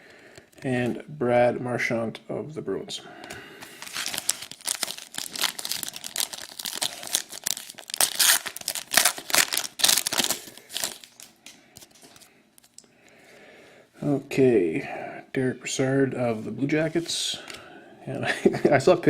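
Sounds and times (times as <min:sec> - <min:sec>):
wrapper crinkling and tearing: 0:03.6 - 0:12.8.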